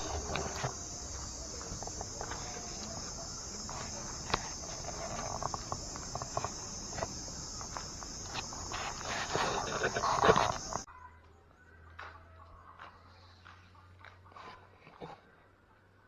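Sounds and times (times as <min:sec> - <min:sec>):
light taps and clicks: 0:00.0 - 0:10.8
high insect drone: 0:00.0 - 0:10.9.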